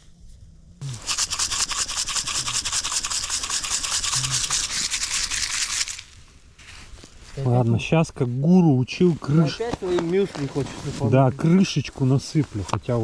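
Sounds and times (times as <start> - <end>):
rapid rubbing strokes: 0.8 - 6.2.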